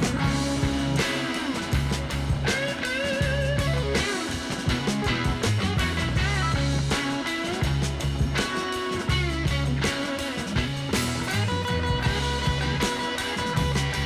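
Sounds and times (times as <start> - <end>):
rock music: 0.0 - 14.0.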